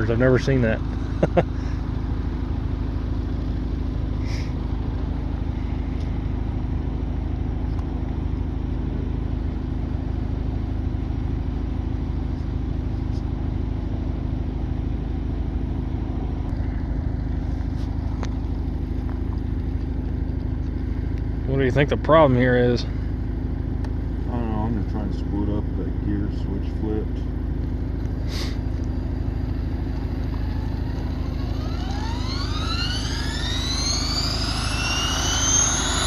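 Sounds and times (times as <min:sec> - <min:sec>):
model helicopter rotors humming: 0:29.4 - 0:36.0.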